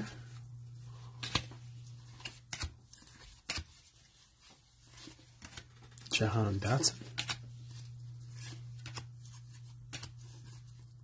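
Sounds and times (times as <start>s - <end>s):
cards being flipped: 7.0s - 10.7s.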